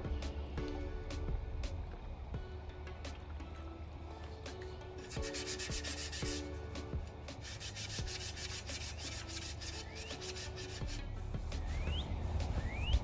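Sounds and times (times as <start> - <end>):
scrubbing rusty metal by hand: 4.3 - 13.0.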